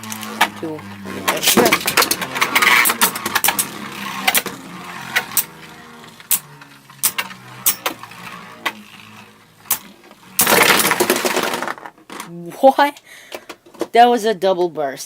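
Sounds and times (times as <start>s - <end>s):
spinning tops whirring: 0.0s - 12.2s
plastic clacks of colliding tops: 9.7s - 12.3s.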